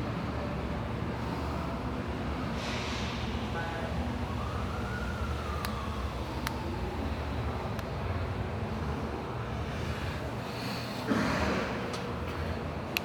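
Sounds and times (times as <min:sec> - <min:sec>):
traffic rumble: 0:00.0 - 0:13.0
siren wailing: 0:03.6 - 0:08.4.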